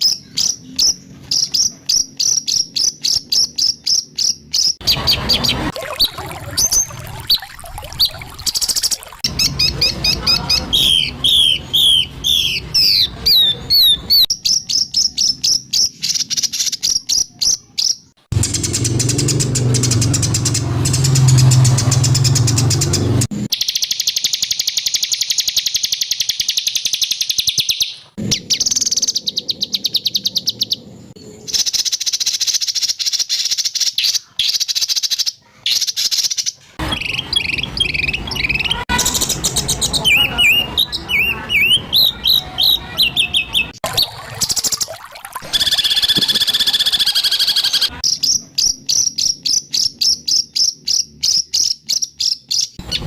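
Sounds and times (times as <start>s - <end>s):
sweeping whistled bird notes: 45.5s - 53.0s.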